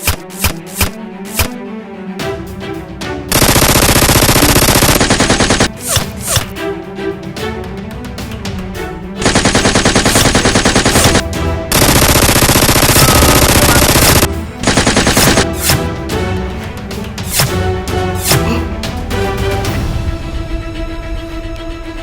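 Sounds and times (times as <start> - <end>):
background music: 0.0 - 22.0
automatic gunfire: 3.3 - 6.5, 9.2 - 15.5.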